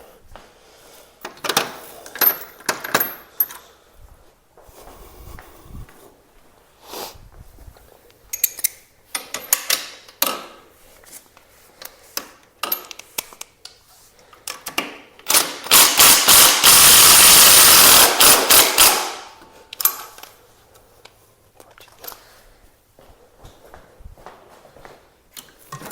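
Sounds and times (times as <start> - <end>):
tools and fasteners clattering: 1.2 - 3.6, 8.3 - 10.6, 11.9 - 13.5, 25.4 - 25.9
cordless power driver running: 15.3 - 19.3.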